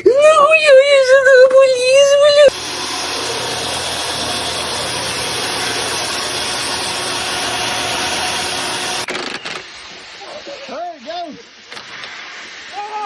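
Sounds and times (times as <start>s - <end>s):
faint hum: 2.5s - 9.1s
machine hissing noise: 2.5s - 13.0s.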